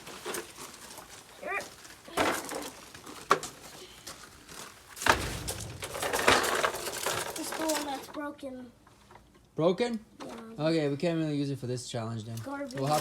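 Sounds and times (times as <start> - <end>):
plastic toys rustling and knocking: 0.0 - 9.4, 10.2 - 10.6, 12.4 - 13.0
heavy thump: 5.0 - 7.1.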